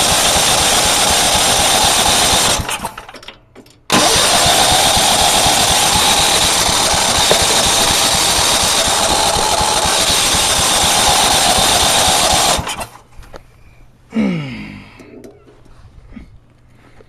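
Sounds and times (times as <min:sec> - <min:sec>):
lawn mower engine running: 0:00.0 - 0:03.3, 0:03.9 - 0:13.0.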